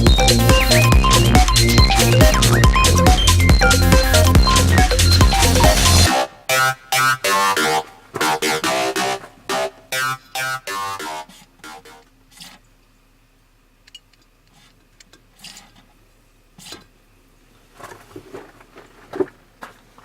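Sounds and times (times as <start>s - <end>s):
electronic background music: 0.0s - 12.0s.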